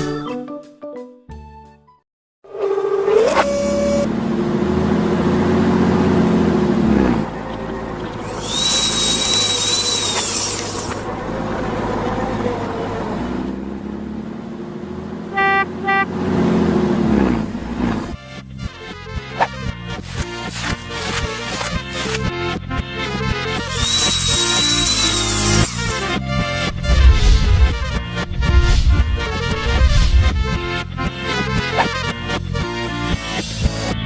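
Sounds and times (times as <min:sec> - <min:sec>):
heavy vehicle engine revving: 0:03.4 - 0:18.5, 0:23.6 - 0:34.0
high whistling tone: 0:08.3 - 0:11.0, 0:23.7 - 0:25.9
short horn toots: 0:15.3 - 0:16.2.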